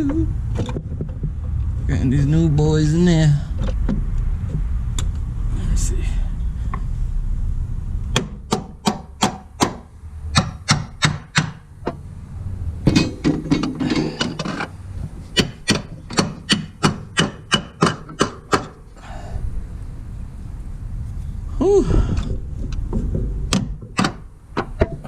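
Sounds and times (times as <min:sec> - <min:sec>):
hammer tapping metal: 0:08.1 - 0:12.0, 0:15.3 - 0:18.8
metal scraping: 0:11.8 - 0:18.8.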